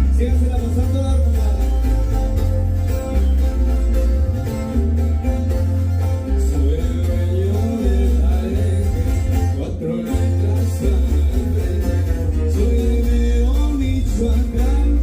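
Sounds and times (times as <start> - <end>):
heavy pulsing bass: 0.0 - 15.0
plucked guitar: 0.0 - 15.0
person singing: 6.2 - 15.0.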